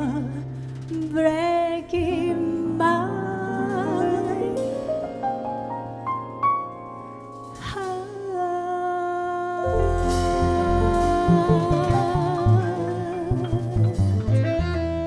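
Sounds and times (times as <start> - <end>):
bass and drums: 0.0 - 2.4, 9.7 - 15.0
piano and keyboard notes: 0.0 - 8.7, 9.5 - 15.0
held note with vibrato: 9.7 - 15.0.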